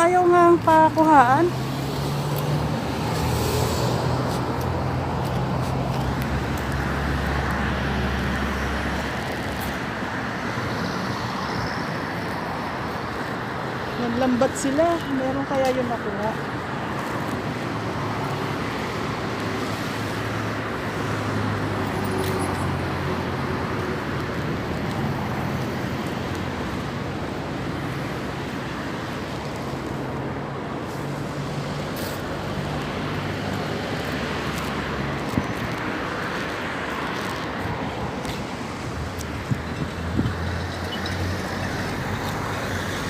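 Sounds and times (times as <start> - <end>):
road traffic engine hum: 0.0 - 43.0
strong wind: 15.9 - 43.0.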